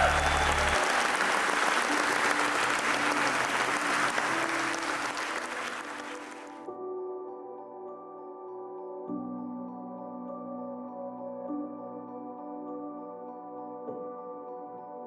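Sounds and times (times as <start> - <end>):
audience applauding: 0.0 - 6.7
soft background music: 1.3 - 15.0.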